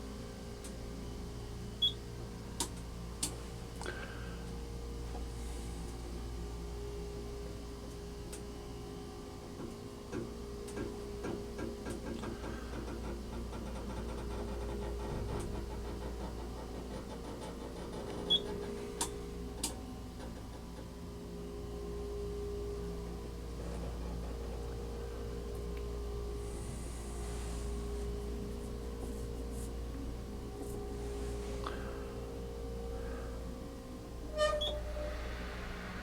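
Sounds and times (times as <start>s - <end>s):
elevator hum: 0.0s - 36.0s.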